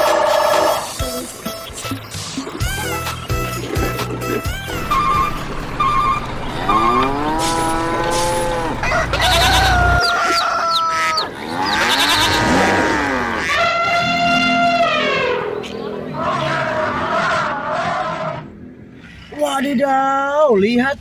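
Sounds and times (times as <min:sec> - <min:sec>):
cow mooing: 0:04.8 - 0:15.6.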